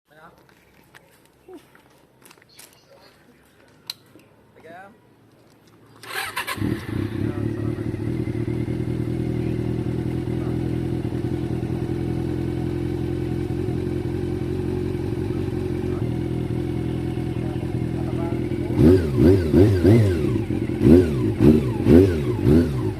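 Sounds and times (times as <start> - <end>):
engine starting clatter: 6.0 - 7.3
motorcycle engine idling: 6.0 - 22.9.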